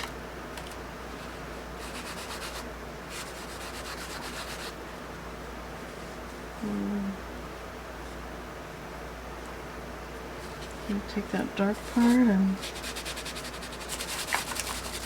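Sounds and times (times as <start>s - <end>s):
charcoal scratching on paper: 1.8s - 4.7s, 11.8s - 15.0s.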